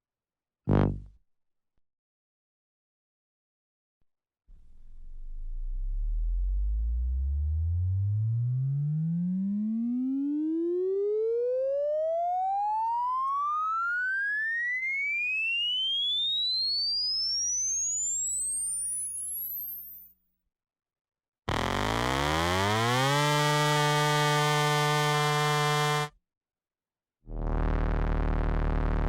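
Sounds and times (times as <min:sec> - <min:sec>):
rising electronic sine tone: 0:04.6 - 0:20.0, 0:21.5 - 0:26.1.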